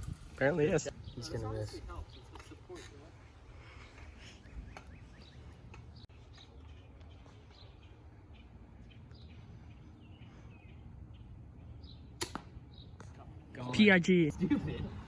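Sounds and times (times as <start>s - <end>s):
outdoor background noise: 0.0s - 15.0s
faint birds chirping: 0.4s - 15.0s.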